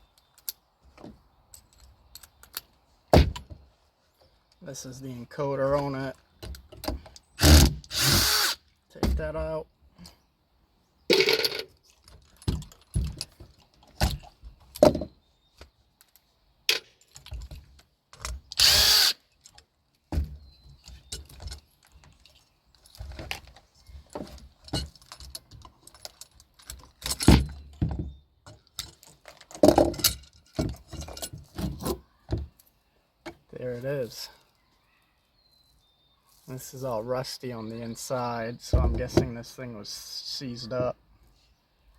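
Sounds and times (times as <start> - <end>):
tools clanking on metal parts: 20.8 - 27.9, 28.5 - 32.0.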